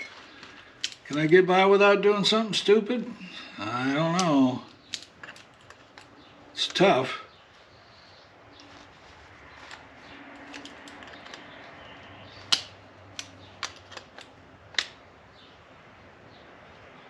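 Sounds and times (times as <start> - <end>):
hand tools ticking and clicking: 0.0 - 1.3, 9.7 - 15.0.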